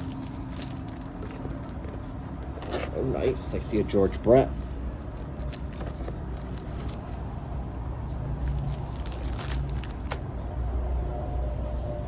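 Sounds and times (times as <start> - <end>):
plastic wrapper crinkling: 0.0 - 3.8, 4.8 - 10.3.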